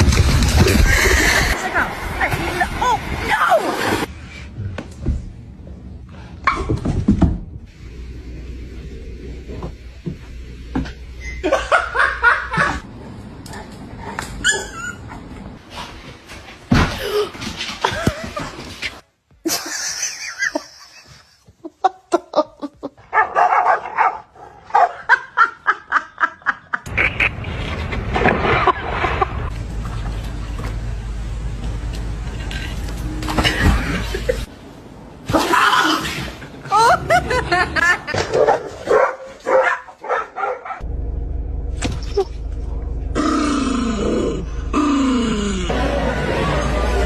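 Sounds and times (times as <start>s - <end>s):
people laughing: 11.4s - 12.8s, 19.5s - 23.0s, 24.9s - 27.5s, 36.5s - 38.3s, 45.7s - 47.0s
dog barking: 23.1s - 25.1s, 38.3s - 40.8s.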